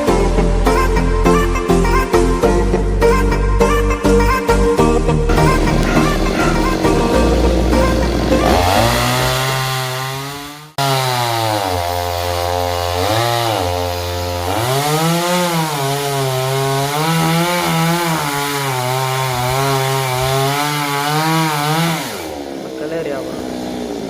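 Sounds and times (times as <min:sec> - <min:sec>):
chainsaw cutting wood: 0:05.3 - 0:24.0.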